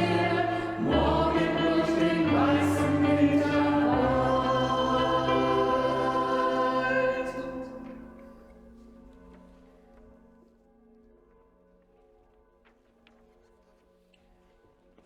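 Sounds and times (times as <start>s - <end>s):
choir singing a held chord: 0.0s - 8.2s.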